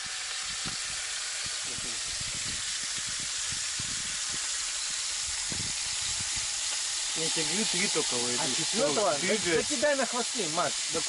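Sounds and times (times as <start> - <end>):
pops and crackles: 0.0 - 4.6
fish sizzling in a pan: 0.0 - 11.0.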